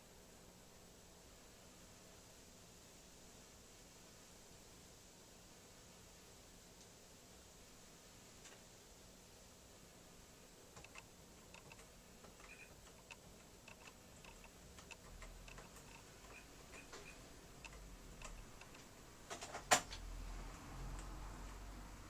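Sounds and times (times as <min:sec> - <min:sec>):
typewriter keys clicking: 0:17.6 - 0:19.9.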